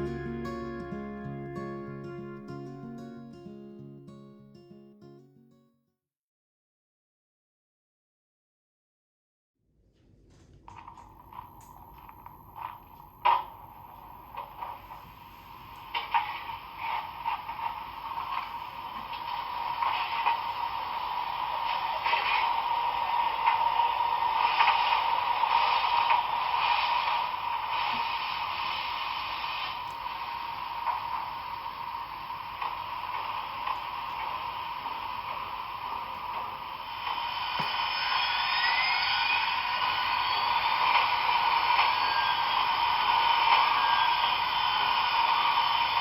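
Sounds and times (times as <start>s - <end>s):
model train motor whirring: 32.4s - 46.0s.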